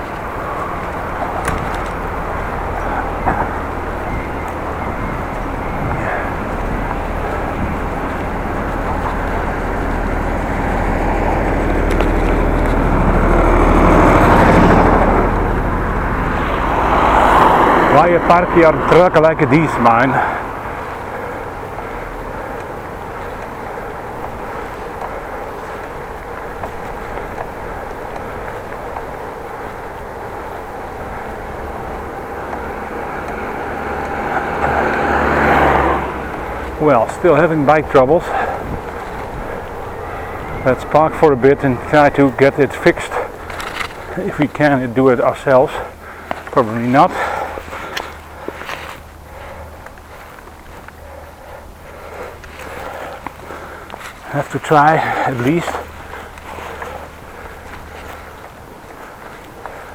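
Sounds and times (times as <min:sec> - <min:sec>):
wind rumbling on microphone: 0:00.0 - 0:46.6
motor vehicle passing: 0:00.0 - 0:59.9
road traffic: 0:00.0 - 0:59.9.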